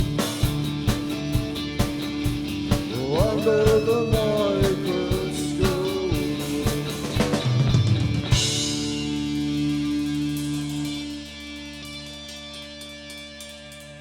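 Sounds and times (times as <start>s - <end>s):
steady drum beat: 0.0s - 12.3s
electric guitar: 0.0s - 14.0s
person singing: 2.8s - 7.5s.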